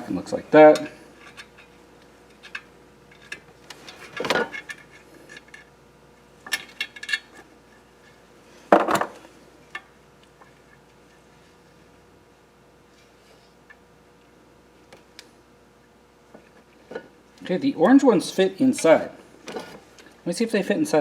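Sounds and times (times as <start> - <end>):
parts clattering: 2.4 - 5.7, 8.7 - 9.3.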